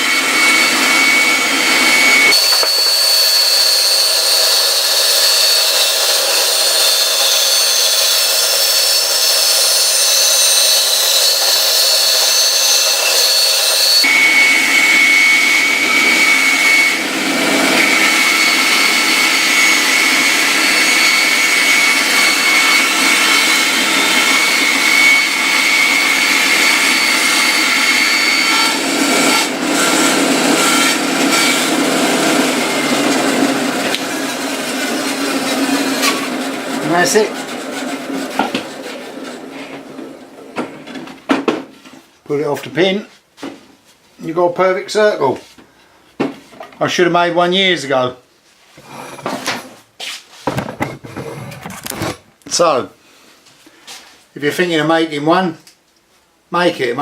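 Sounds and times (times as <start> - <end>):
bandsaw cutting wood: 0.0 - 41.2, 50.9 - 52.3.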